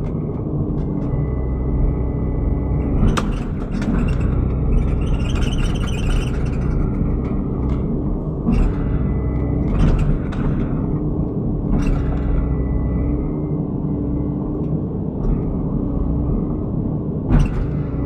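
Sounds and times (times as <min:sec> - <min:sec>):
diesel excavator engine running: 0:00.0 - 0:18.0
machine knocks and clanks: 0:00.0 - 0:18.0.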